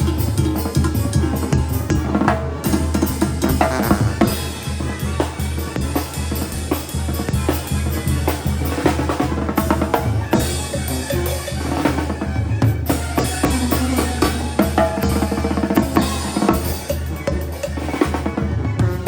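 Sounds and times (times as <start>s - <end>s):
banda music: 0.0s - 19.0s
deep bass notes: 3.2s - 4.8s
bass drum and snare hits: 3.4s - 4.7s.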